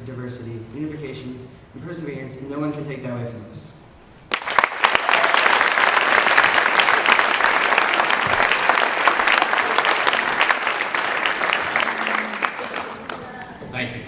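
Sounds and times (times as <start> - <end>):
audience applauding: 4.3 - 13.7.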